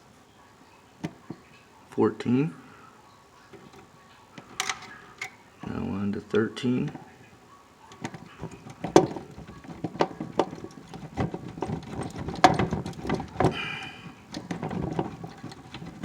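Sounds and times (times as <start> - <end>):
plastic connector clicks and knocks: 8.0 - 13.6.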